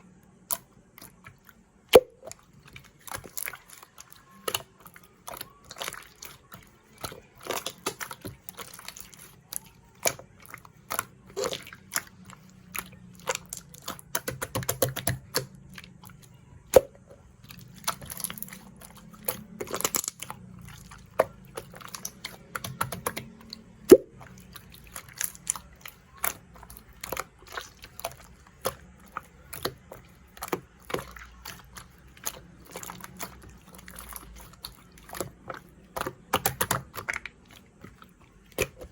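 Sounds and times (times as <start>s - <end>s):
slime popping: 21.0s - 38.9s.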